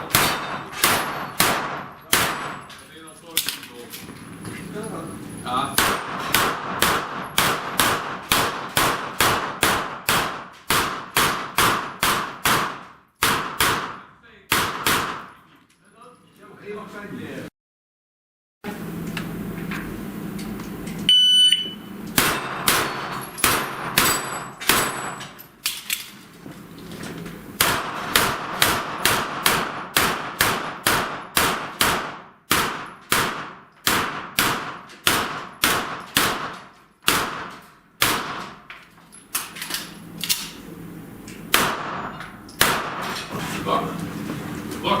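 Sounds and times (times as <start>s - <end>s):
gunshots hitting steel plates: 0.0s - 3.6s, 5.8s - 15.4s, 22.2s - 25.6s, 27.6s - 38.7s, 41.5s - 43.4s
shot timer beep: 21.1s - 21.9s.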